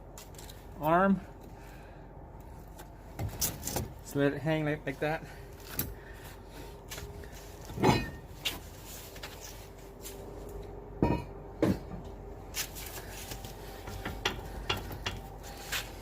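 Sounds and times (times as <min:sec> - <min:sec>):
metal tools clanking: 0:07.7 - 0:08.3.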